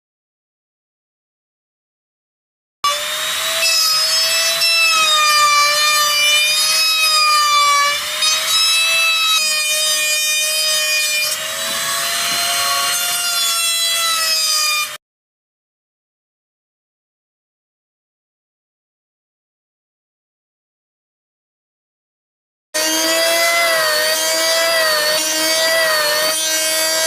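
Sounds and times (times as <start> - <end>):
power tool whining: 2.8 - 15.0, 22.8 - 27.0
wood rasping: 3.0 - 15.0, 22.8 - 27.0.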